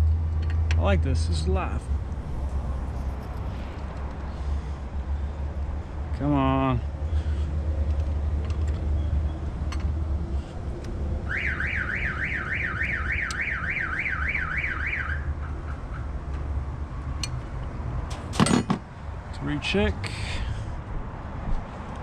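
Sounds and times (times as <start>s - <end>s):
low hum: 1.0s - 6.2s
car alarm warbling siren: 11.2s - 16.1s.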